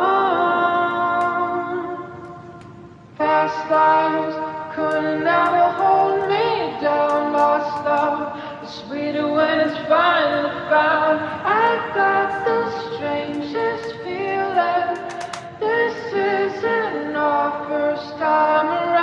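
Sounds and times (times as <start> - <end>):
pop song with sung vocals: 0.0 - 19.0.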